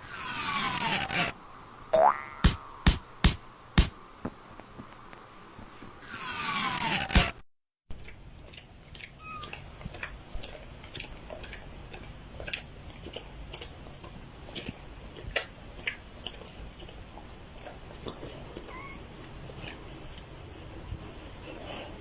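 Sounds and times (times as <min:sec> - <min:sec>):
faint low hum: 0:07.9 - 0:22.0.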